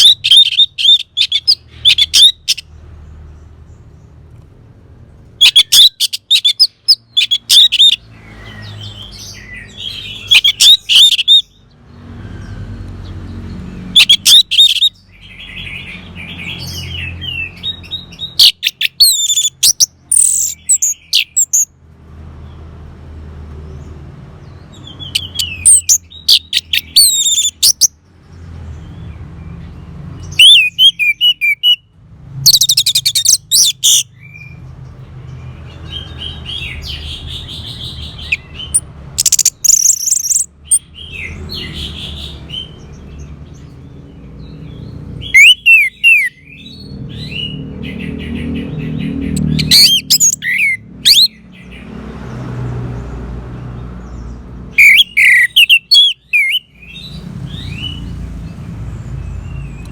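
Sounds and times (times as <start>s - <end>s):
thrush singing whistled phrases: 0.0s - 2.7s, 5.4s - 8.0s, 9.3s - 11.6s, 16.6s - 21.7s, 25.0s - 27.9s, 30.3s - 31.9s, 32.5s - 34.6s, 37.8s - 41.3s, 45.2s - 47.6s, 49.4s - 51.4s, 54.8s - 58.0s.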